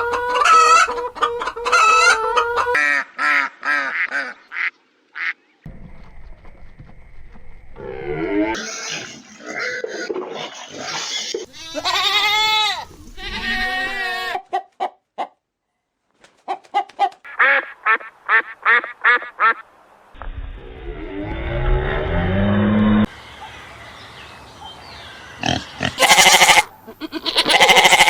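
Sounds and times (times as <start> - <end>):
waterfowl honking: 0.0 - 5.4
goat bleating: 11.5 - 14.5, 25.5 - 28.0
low rising rumble: 20.2 - 23.9.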